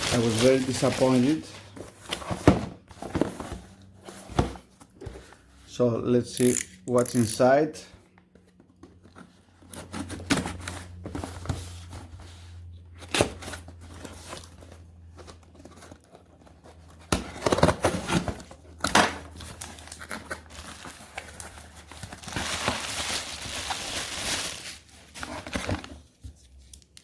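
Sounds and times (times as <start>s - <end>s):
packaging crinkling and tearing: 0.0s - 1.6s, 17.3s - 27.0s.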